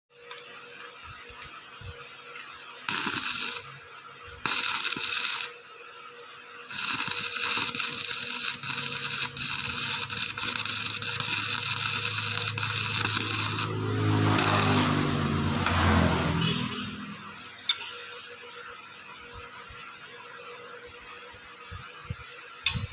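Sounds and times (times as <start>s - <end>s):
welding arc crackling: 2.7s - 3.8s, 4.4s - 5.6s, 6.7s - 17.4s
low hum: 6.7s - 17.8s.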